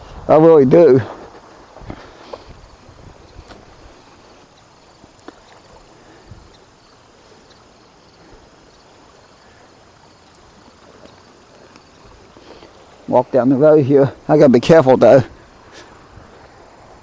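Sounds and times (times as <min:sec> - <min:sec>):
flooded creek rushing: 0:00.0 - 0:17.0
faint ticks: 0:04.5 - 0:09.6, 0:10.2 - 0:12.8.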